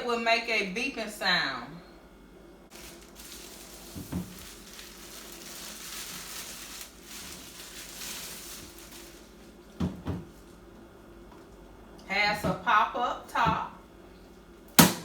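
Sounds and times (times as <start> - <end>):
packaging rustling and crinkling: 2.7 - 10.6.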